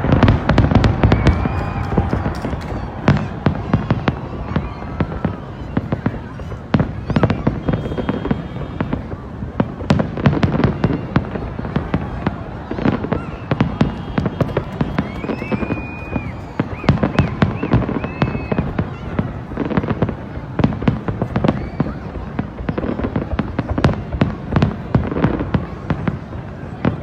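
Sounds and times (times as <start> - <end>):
firework whistles: 0.0 - 9.2, 10.2 - 19.2, 21.3 - 22.2
fireworks bangs and crackles: 0.0 - 27.0.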